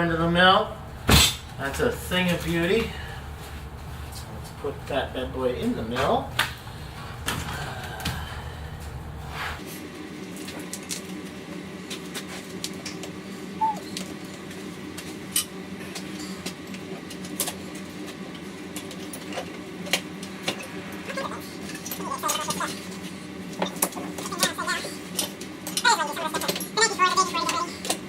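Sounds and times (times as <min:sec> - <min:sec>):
steady hum: 0:00.0 - 0:09.6.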